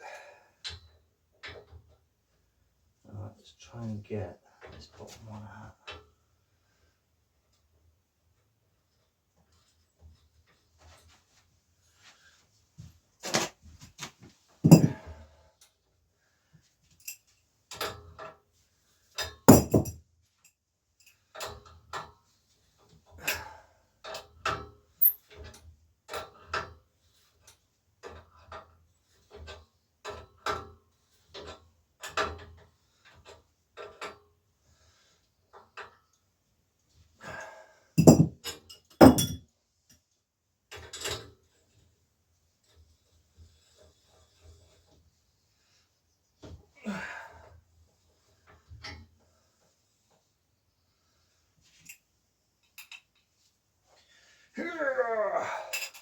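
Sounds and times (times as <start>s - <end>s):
metal tools knocking on metal: 14.7s - 15.0s, 19.5s - 20.0s, 38.0s - 39.4s.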